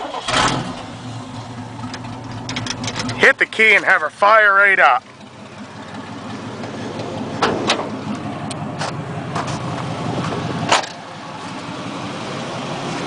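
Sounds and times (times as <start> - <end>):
car engine idling: 0.0 - 13.0
sharp clicks and knocks: 1.8 - 3.2, 6.6 - 11.0.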